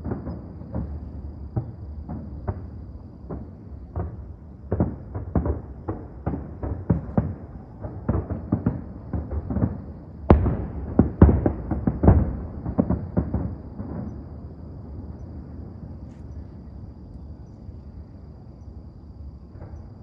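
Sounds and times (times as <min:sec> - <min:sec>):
fireworks bursting: 0:00.0 - 0:14.2.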